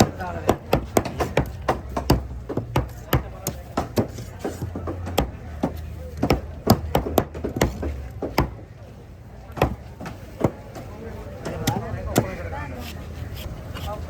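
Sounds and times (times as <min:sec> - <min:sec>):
knife chopping fish on a block: 0:00.0 - 0:08.6.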